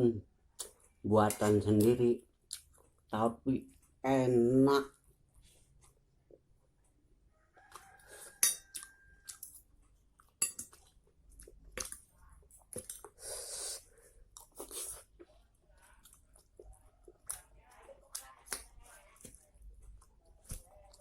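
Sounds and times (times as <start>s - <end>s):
person chewing: 0.5s - 3.1s, 7.6s - 21.0s.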